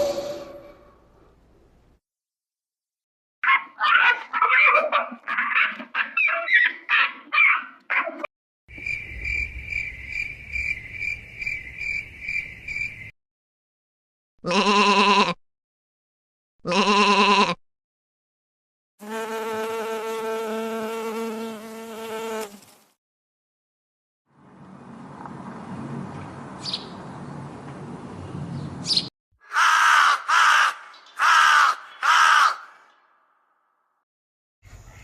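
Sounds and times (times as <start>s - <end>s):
insect buzzing: 19.0s - 22.9s.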